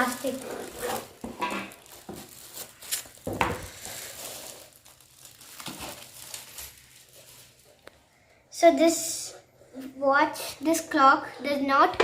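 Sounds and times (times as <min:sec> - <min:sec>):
plastic packaging crinkling: 0:00.0 - 0:08.0.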